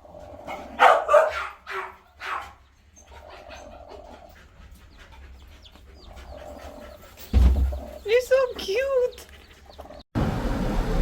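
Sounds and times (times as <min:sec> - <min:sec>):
dog barking: 0:00.5 - 0:02.6.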